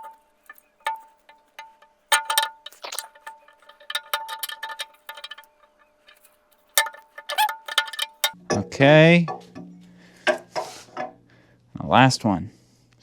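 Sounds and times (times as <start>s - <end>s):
metal tools clinking on engine parts: 0.0s - 8.4s
metallic ringing: 0.0s - 10.2s.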